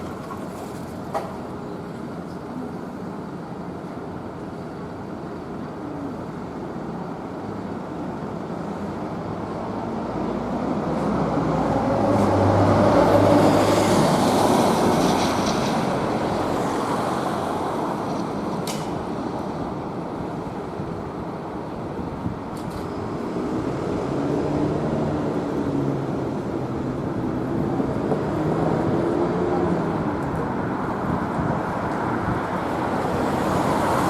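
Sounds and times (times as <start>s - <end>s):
street traffic: 0.0s - 34.0s
vehicle passing close by: 10.6s - 17.1s.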